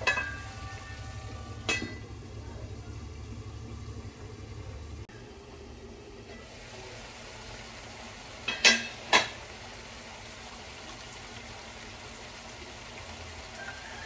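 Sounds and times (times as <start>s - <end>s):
utensil clinking on cookware: 0.0s - 0.6s, 1.6s - 2.2s, 8.4s - 9.4s
food sizzling in a pan: 6.2s - 14.0s.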